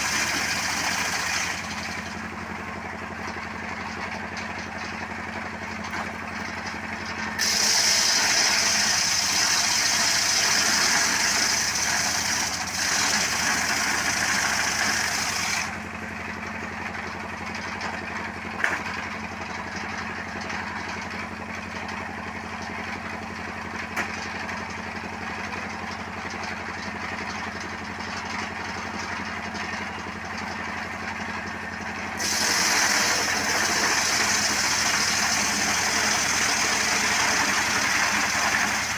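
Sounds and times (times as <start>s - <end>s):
saw cutting wood: 0.0s - 2.3s, 7.3s - 15.9s, 32.2s - 38.9s.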